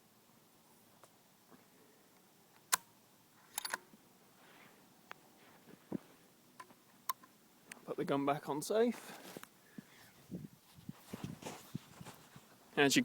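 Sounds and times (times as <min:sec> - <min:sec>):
rifle bolt metallic clicks: 0:03.5 - 0:03.8.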